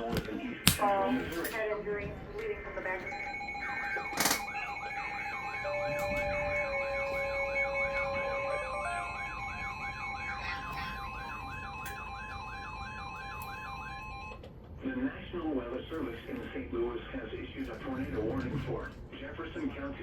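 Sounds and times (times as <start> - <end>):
beeping alarm tones: 2.9 - 14.4
warbling siren: 3.0 - 14.4.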